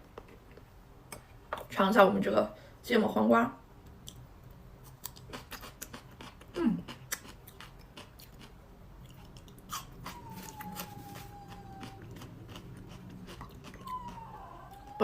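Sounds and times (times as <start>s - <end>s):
crunchy chewing of cucumber: 4.8s - 14.7s.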